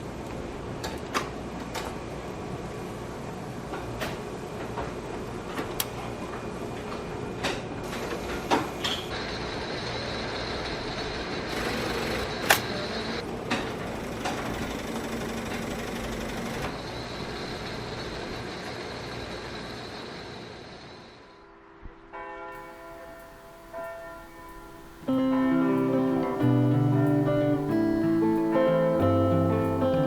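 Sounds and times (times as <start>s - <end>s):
wheels clicking on track: 4.6s - 20.7s
thin high whine: 22.6s - 30.0s.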